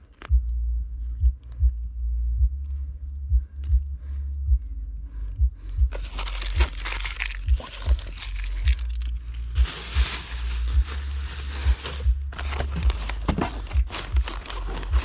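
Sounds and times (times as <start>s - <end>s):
crunching crinkling handling noise: 0.0s - 0.3s, 5.9s - 15.0s
low steady hum: 0.0s - 15.0s
soft regular thumps: 0.0s - 15.0s.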